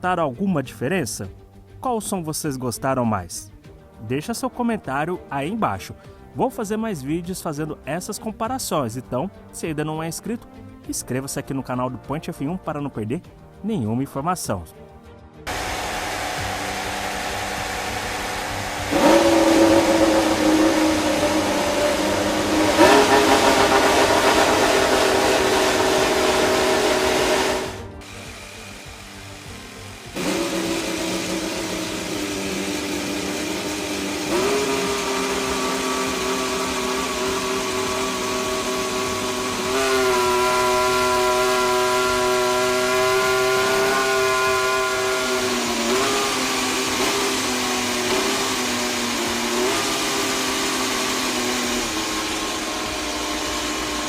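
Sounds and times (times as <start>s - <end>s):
racing car engine whining idle: 15.5s - 54.0s.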